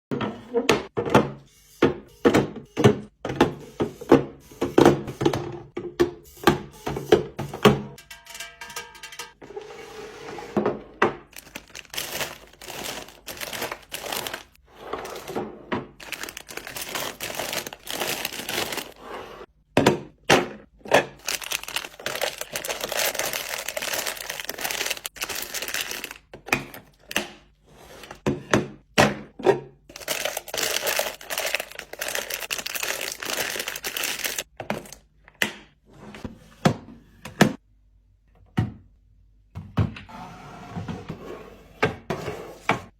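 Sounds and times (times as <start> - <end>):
plastic packaging crinkling: 11.3 - 14.6, 15.9 - 19.0, 21.2 - 26.3, 29.9 - 34.5.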